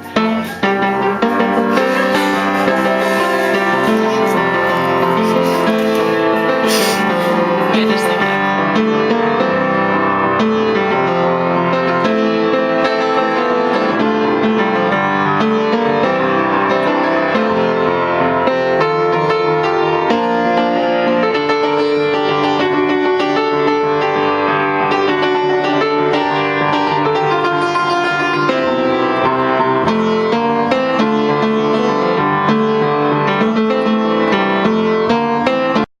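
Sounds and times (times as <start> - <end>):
piano playing: 0.0 - 35.9.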